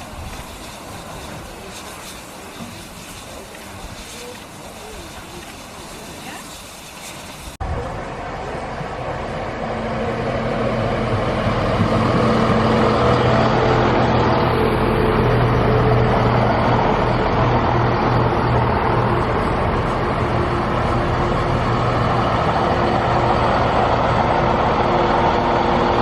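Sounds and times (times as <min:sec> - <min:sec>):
heavy diesel engine running: 0:07.4 - 0:26.0.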